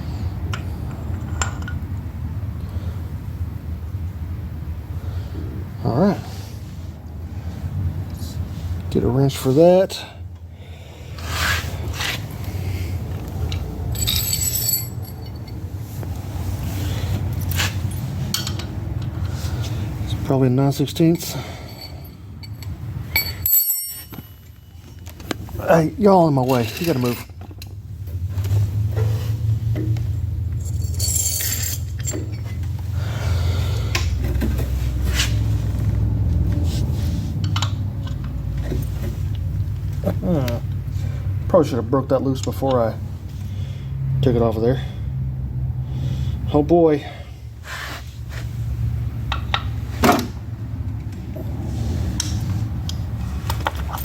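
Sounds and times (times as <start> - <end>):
metal tools clinking and scraping: 0.5 - 1.8, 11.2 - 19.8, 20.7 - 27.8, 28.4 - 32.8, 51.8 - 54.0
hand tools clinking on metal: 13.4 - 15.7, 21.1 - 25.2, 26.3 - 27.4, 30.6 - 32.6
metallic jangle: 13.8 - 15.8, 21.2 - 24.9, 30.5 - 32.6.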